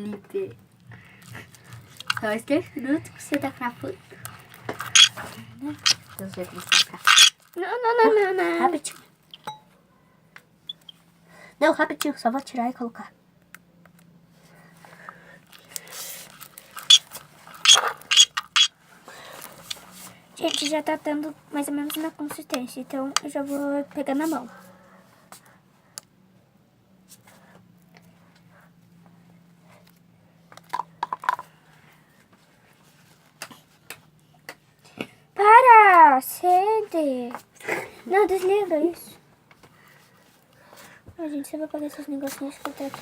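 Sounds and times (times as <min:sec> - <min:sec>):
slime being stirred: 0:04.5 - 0:07.3, 0:15.8 - 0:18.7, 0:20.4 - 0:20.8
sharp clicks: 0:04.9 - 0:05.2, 0:06.6 - 0:07.3, 0:17.6 - 0:18.7, 0:20.5 - 0:20.7
sharp sticky slime sounds: 0:04.9 - 0:05.2, 0:05.8 - 0:07.3, 0:16.8 - 0:18.7, 0:20.4 - 0:20.8.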